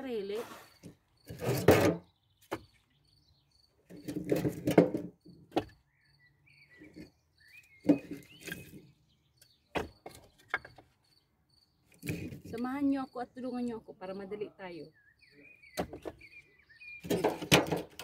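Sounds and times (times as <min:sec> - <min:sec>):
cricket chirping: 0:03.0 - 0:03.8, 0:10.6 - 0:12.0
firewood logs clattering: 0:03.9 - 0:05.8, 0:07.8 - 0:08.9, 0:09.7 - 0:11.0, 0:15.8 - 0:16.3, 0:17.0 - 0:18.0.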